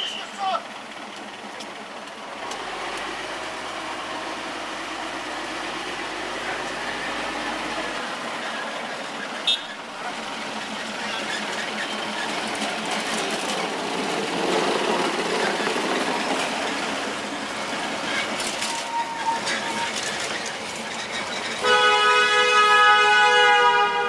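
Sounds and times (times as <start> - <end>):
diesel locomotive engine: 0.0 - 24.0
high train toot: 3.3 - 9.9, 18.0 - 24.0.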